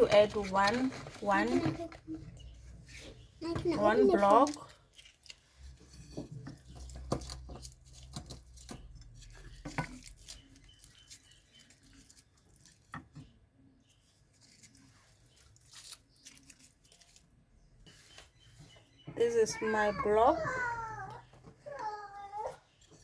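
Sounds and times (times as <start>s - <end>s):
foil wrapper crinkling: 4.0s - 5.8s, 6.8s - 12.9s, 14.3s - 17.5s.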